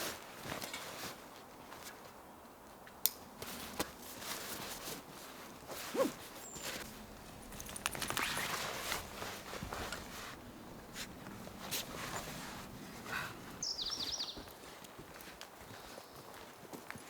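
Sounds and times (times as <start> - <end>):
footsteps on forest ground: 6.4 - 17.0
bird chirping: 11.1 - 14.5.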